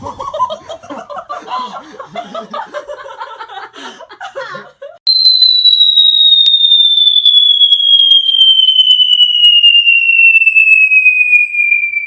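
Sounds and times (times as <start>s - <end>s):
high-pitched tone gliding downward: 5.1s - 12.0s.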